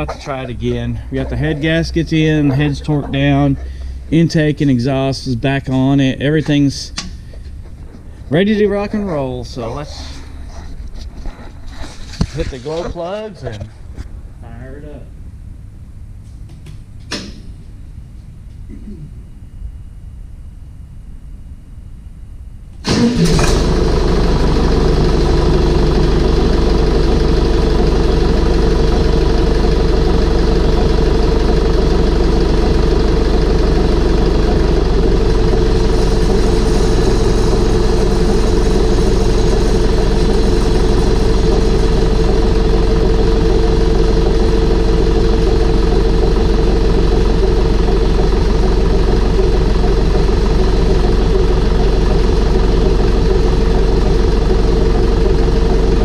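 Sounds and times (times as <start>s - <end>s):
diesel engine starting and running: 0.0s - 10.6s, 22.8s - 56.0s.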